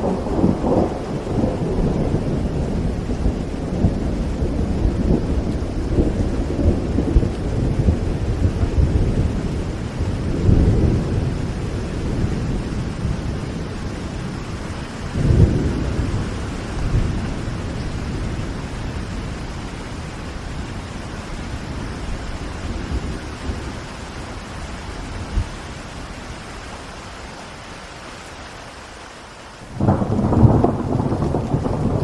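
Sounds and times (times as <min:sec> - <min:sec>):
thunder rolling: 0:00.0 - 0:19.5, 0:29.7 - 0:32.0
steady rain: 0:00.0 - 0:32.0.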